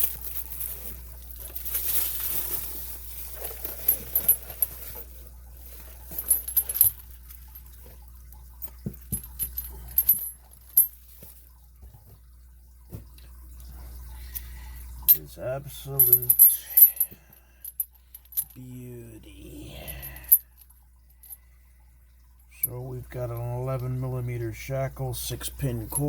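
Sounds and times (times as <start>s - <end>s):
chain and padlock clinking: 0.0s - 5.1s, 6.0s - 7.4s, 8.6s - 10.9s, 15.9s - 18.6s, 19.9s - 20.6s.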